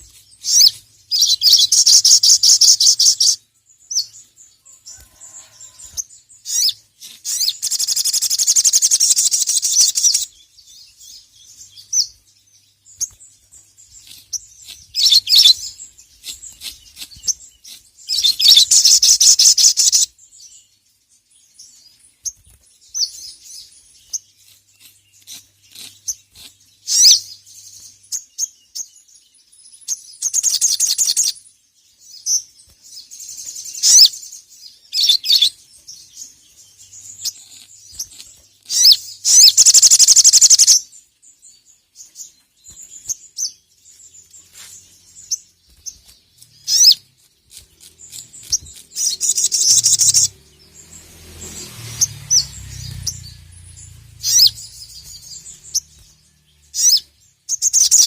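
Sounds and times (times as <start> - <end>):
bird chirping: 0.0 - 58.0
bird rapid rattling trills: 5.0 - 10.3, 13.0 - 20.1, 35.0 - 40.8, 45.2 - 58.0.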